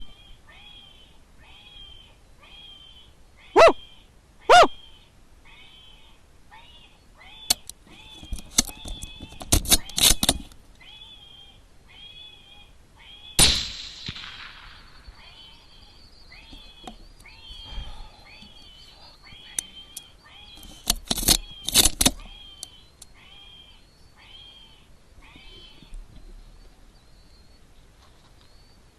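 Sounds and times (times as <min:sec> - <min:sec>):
electronic animal distress call: 0:00.1 - 0:10.0, 0:15.3 - 0:25.9
sharp clicks: 0:07.5 - 0:10.6, 0:19.5 - 0:23.1
rifle shot: 0:13.4 - 0:15.2.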